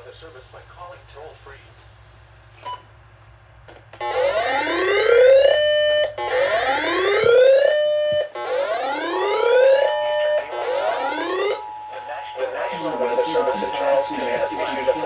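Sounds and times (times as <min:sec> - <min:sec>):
synthetic siren tone: 0:04.0 - 0:15.0.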